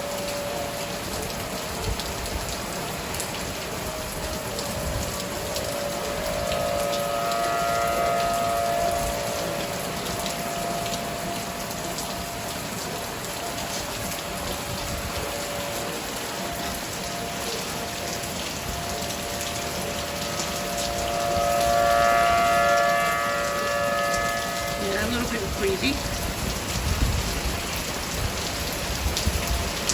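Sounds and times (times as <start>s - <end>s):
steady rain hiss: 0.0s - 29.9s
two-note tornado siren: 0.0s - 29.9s.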